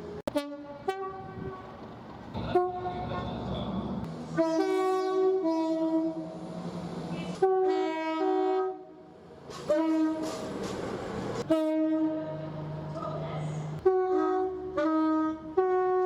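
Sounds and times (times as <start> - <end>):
train two-tone horn blasts: 0.1 - 1.8, 2.4 - 3.4, 4.3 - 6.4, 7.2 - 10.5, 11.4 - 12.6, 13.8 - 16.0.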